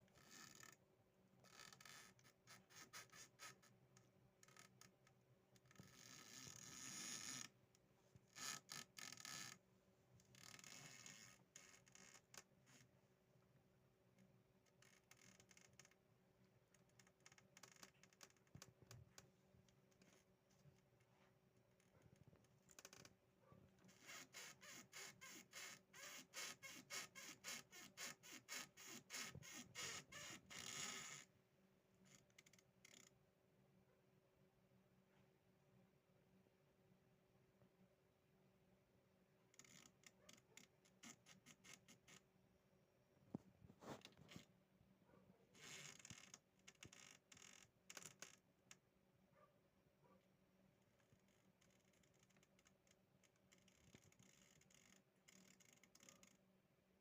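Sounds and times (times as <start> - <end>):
cat rasping squeaky noise: 23.9 - 31.2.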